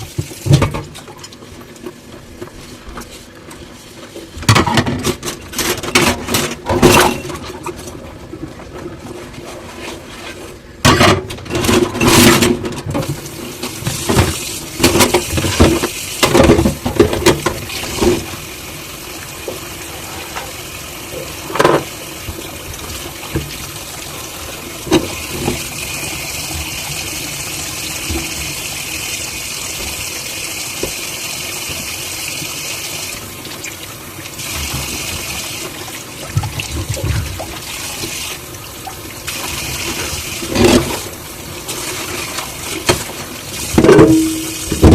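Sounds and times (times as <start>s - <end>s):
dishes clattering in a sink: 0.0s - 1.4s, 4.4s - 8.1s, 10.8s - 18.4s, 19.5s - 23.8s, 24.8s - 28.6s, 39.3s - 44.9s
dishes clinking: 43.8s - 44.9s.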